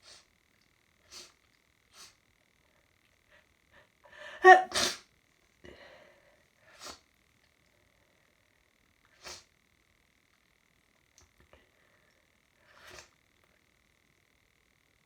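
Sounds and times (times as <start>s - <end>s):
person sneezing: 4.2s - 5.0s
person sniffing: 4.2s - 5.0s.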